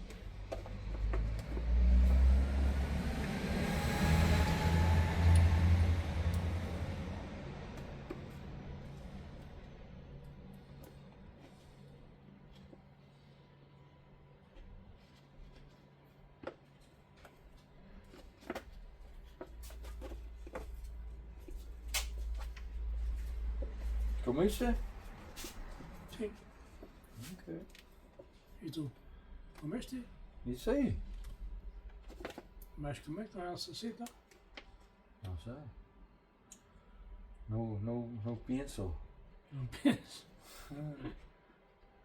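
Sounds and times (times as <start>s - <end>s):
passing vehicle rumble: 0.0s - 11.2s, 20.8s - 27.1s.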